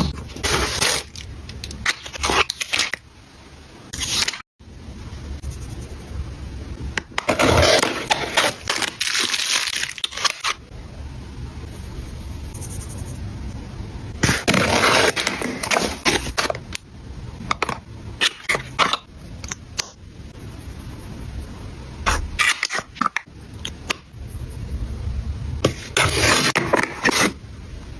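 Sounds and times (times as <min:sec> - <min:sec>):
packaging crinkling and scraping: 0:00.0 - 0:03.0, 0:07.3 - 0:10.6, 0:14.2 - 0:16.8, 0:25.6 - 0:27.4.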